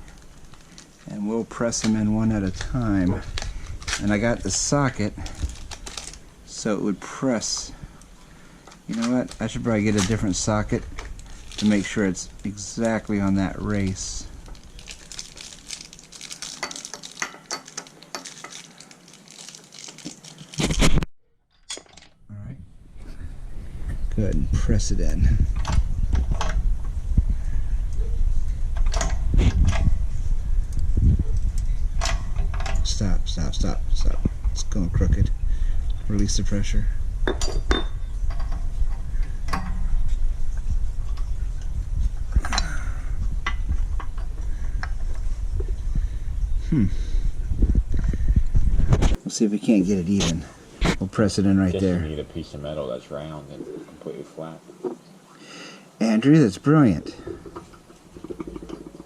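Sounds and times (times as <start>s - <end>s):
steady low rumble: 22.2s - 49.2s.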